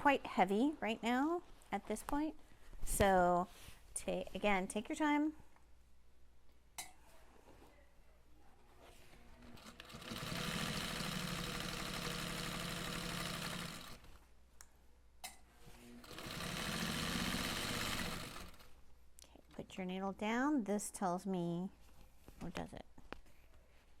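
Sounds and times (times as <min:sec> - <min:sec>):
sewing machine stitching: 0:09.4 - 0:14.2, 0:16.0 - 0:18.7.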